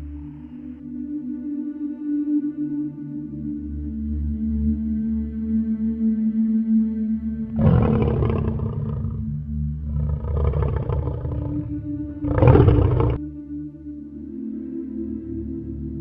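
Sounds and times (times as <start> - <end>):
lion roaring: 7.5 - 13.2
ambient music drone: 9.1 - 16.0.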